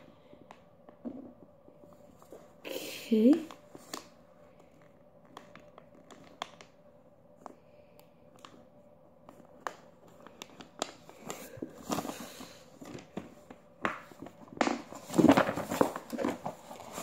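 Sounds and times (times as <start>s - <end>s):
paper rustling: 9.3s - 17.0s.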